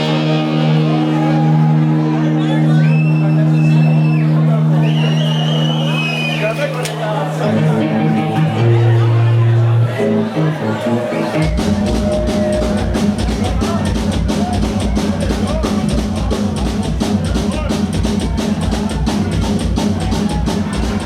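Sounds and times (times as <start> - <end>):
punk band playing live: 0.0 - 21.0
fast drum beat: 11.4 - 21.0.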